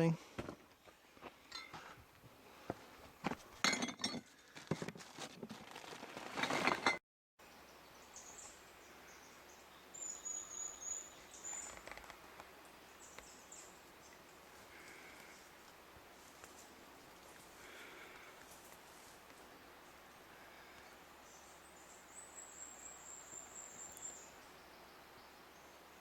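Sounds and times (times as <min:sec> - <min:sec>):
faint high bird chirps: 0:07.6 - 0:11.8.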